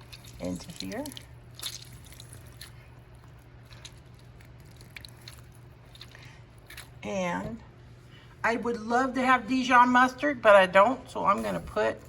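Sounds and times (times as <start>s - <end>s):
drips: 0.0s - 2.9s
low steady hum: 0.0s - 12.0s.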